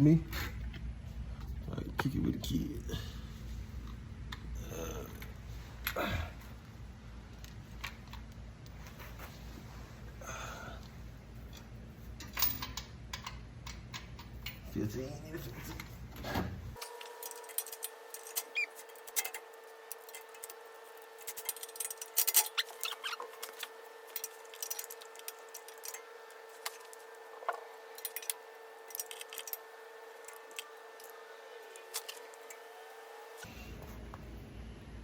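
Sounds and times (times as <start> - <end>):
hand tools clicking and clinking: 16.8 - 29.6.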